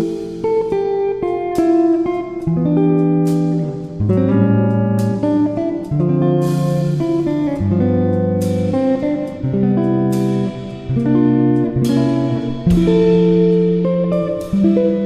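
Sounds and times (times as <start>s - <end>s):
guitar music: 0.0s - 15.0s
cymbal crash: 11.8s - 13.8s.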